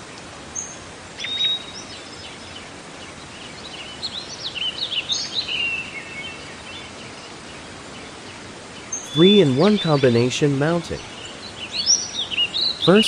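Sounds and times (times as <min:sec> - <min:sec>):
outdoor background hiss: 0:00.0 - 0:13.0
birds chirping: 0:09.0 - 0:13.0.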